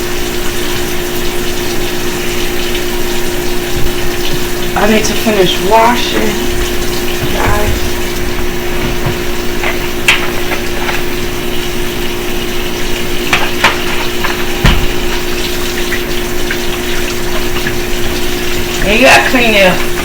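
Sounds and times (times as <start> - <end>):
tap running into sink: 0.5 - 11.7, 12.8 - 20.0
dishes knocking: 13.3 - 15.1.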